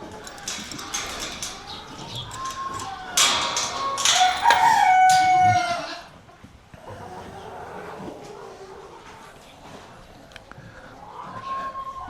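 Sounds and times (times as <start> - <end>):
rooster crowing: 4.5 - 5.9.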